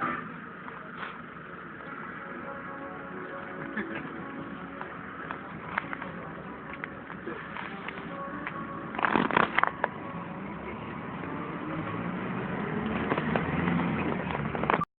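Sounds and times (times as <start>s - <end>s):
truck running: 0.0s - 14.9s
sharp cracks: 8.9s - 10.0s.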